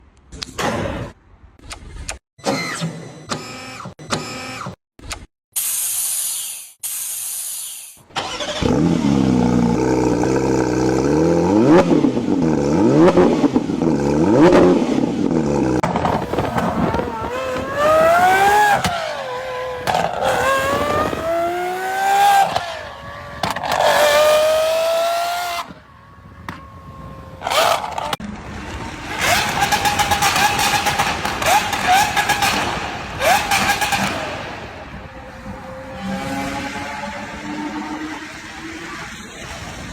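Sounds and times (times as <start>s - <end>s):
short bursts of hiss: 5.6s - 8.0s
car engines revving: 8.2s - 39.9s.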